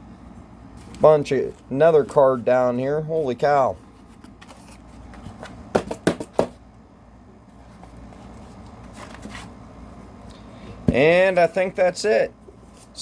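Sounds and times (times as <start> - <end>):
paper cards rustling and tapping: 4.0 - 6.6
faint handling noise: 7.4 - 10.2.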